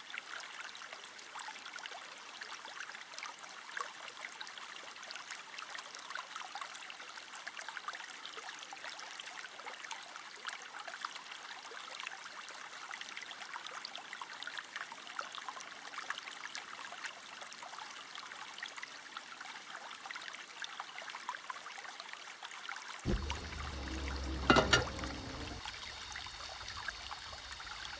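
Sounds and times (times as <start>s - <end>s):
food sizzling in hot oil: 23.1s - 27.9s.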